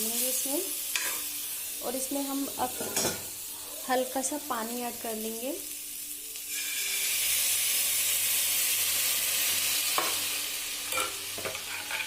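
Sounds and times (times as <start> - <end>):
loud sizzling in a pan: 0.0 - 12.0
spoon scraping a pan: 0.9 - 1.4, 2.7 - 3.9, 10.9 - 12.0.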